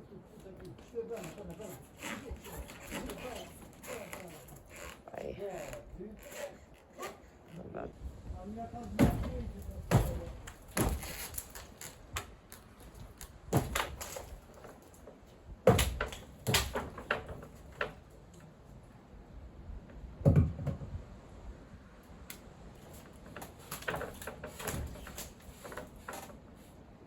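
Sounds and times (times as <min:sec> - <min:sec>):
wooden timbers knocking: 0:08.8 - 0:11.6, 0:12.9 - 0:18.0, 0:20.2 - 0:21.0.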